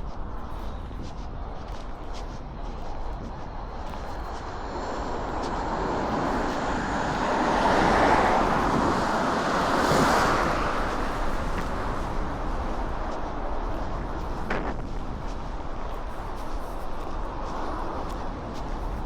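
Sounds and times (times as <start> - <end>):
wind: 0.0 - 19.0
car passing by: 4.3 - 13.5.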